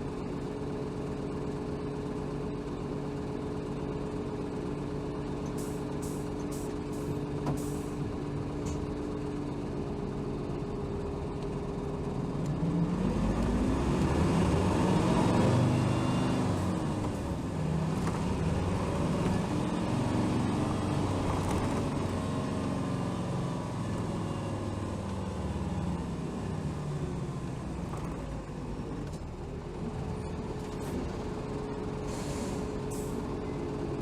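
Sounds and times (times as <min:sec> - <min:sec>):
bus diesel engine: 0:00.0 - 0:34.0
air hiss: 0:32.1 - 0:33.1.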